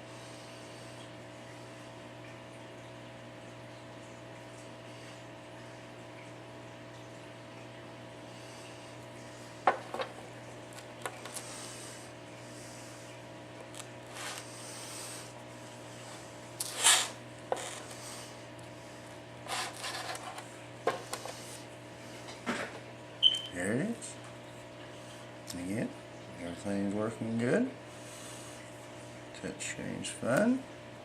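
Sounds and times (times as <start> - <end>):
low electrical hum: 0.0 - 31.0
brushing or rubbing sounds: 16.6 - 17.9.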